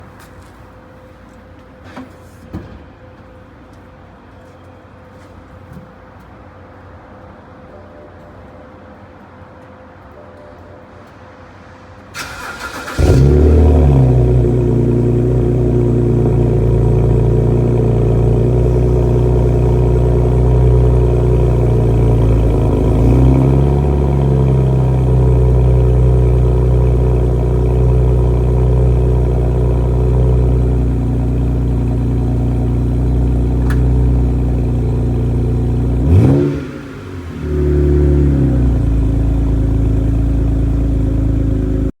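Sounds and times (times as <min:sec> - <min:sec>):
car engine starting and idling: 0:12.1 - 0:41.9.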